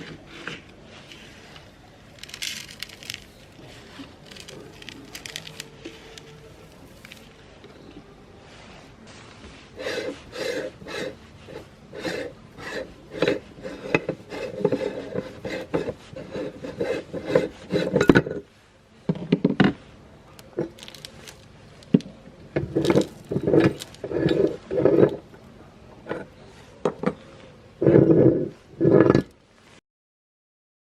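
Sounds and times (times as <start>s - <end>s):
meat grinder crunching: 2.0s - 7.3s, 20.7s - 22.0s, 22.6s - 24.7s.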